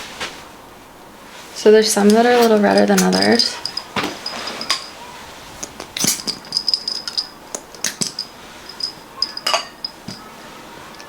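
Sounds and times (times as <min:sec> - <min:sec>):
light rattling: 0:01.9 - 0:11.0
plastic cupping cups clicking: 0:05.6 - 0:10.3.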